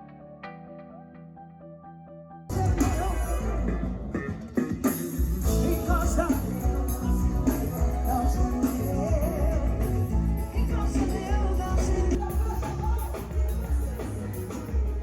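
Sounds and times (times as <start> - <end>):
upbeat pop-rock music: 2.5 - 15.0
person singing: 5.4 - 15.0.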